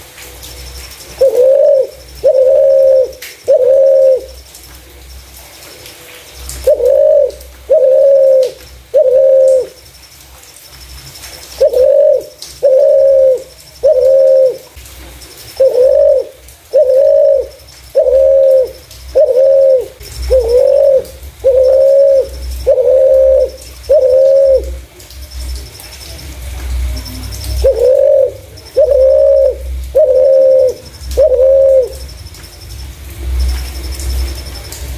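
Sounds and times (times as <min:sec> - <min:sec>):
dove cooing: 0:01.1 - 0:04.4, 0:06.5 - 0:09.8, 0:11.5 - 0:14.8, 0:15.5 - 0:24.9, 0:26.9 - 0:32.2.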